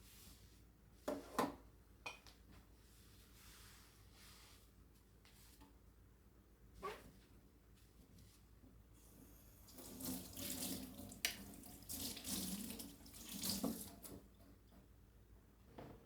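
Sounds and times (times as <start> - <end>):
water splashing at a sink: 9.6 - 14.4.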